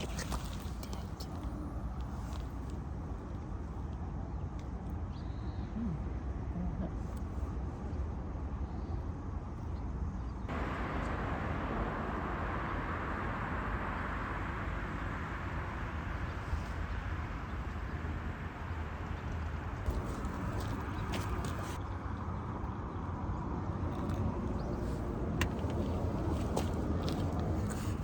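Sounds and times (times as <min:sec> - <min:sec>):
low rumble: 0:10.5 - 0:28.0.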